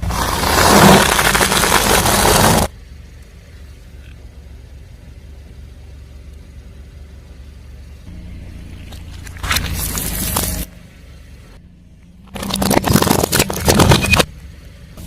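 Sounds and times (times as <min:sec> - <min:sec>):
tyre crunching objects: 0:00.0 - 0:02.7, 0:08.8 - 0:10.7, 0:12.2 - 0:14.3
car engine running low: 0:00.0 - 0:15.0.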